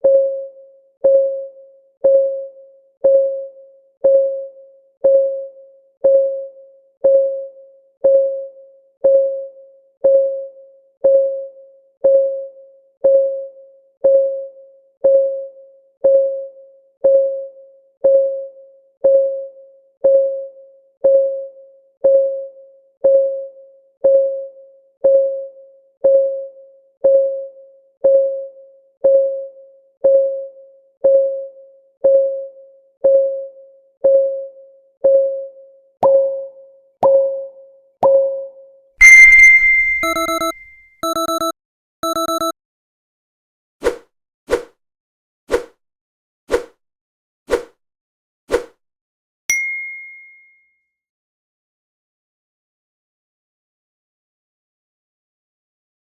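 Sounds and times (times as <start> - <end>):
clock ticking: 39.0 - 42.5.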